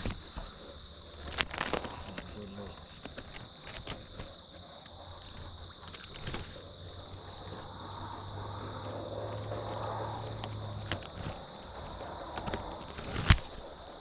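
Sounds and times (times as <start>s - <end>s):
faint clicks: 1.2s - 14.0s
low engine-like hum: 4.2s - 14.0s.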